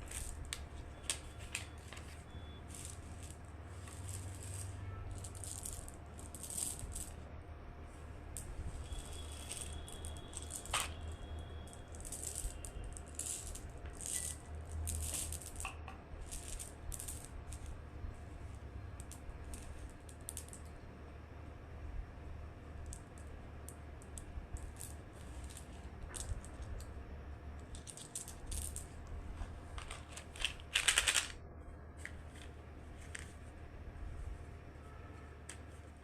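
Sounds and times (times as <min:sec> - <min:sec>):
plastic wrappers rustling: 0:00.0 - 0:07.2, 0:08.8 - 0:16.7, 0:29.6 - 0:31.4.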